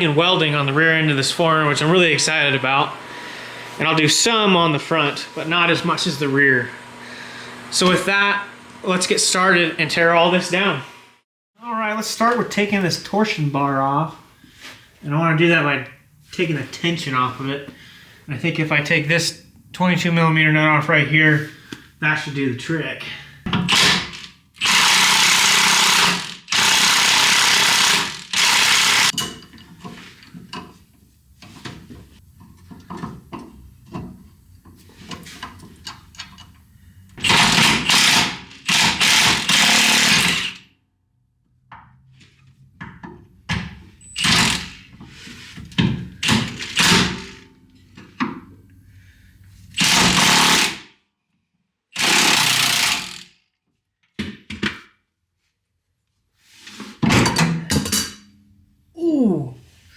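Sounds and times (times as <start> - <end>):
impact wrench hammering: 23.5 - 29.2, 37.2 - 40.6, 46.2 - 47.4, 49.8 - 50.9, 52.0 - 53.3.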